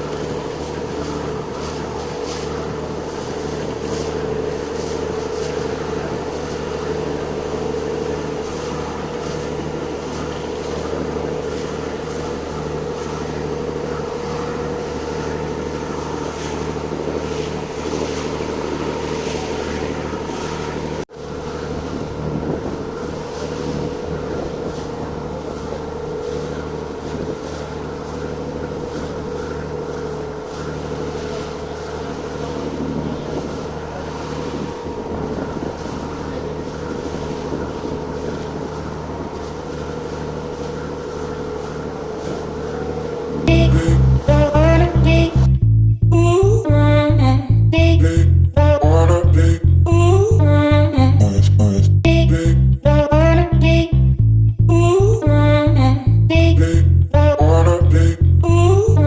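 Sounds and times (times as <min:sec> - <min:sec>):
wind and water hiss: 0:00.0 - 0:45.4
boat engine droning: 0:00.0 - 0:59.0.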